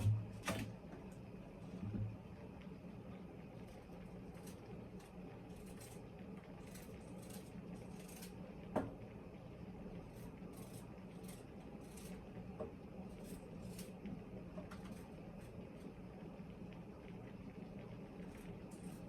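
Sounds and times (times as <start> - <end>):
low steady hum: 0.0 - 19.0
knife scraping vegetable: 4.4 - 6.0, 6.6 - 8.4, 10.2 - 12.2, 13.1 - 14.0.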